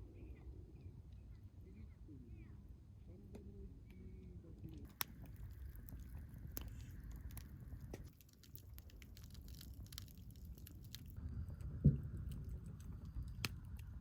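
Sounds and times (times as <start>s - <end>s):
low steady rumble: 0.0s - 14.0s
small crackles and clicks: 4.6s - 14.0s.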